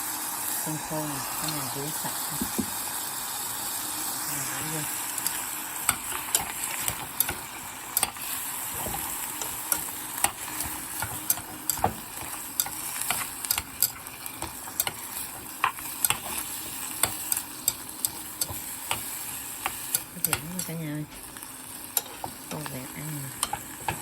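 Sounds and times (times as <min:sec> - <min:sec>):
food sizzling in a pot: 0:00.0 - 0:24.0
utensil scraping and knocking pot: 0:05.2 - 0:22.7, 0:23.3 - 0:24.0.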